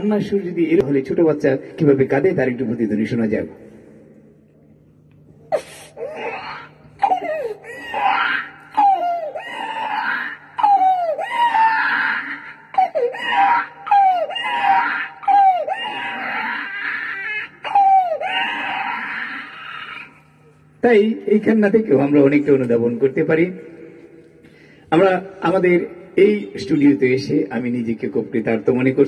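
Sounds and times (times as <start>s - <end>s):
man imitating baby crying: 5.5s - 20.2s.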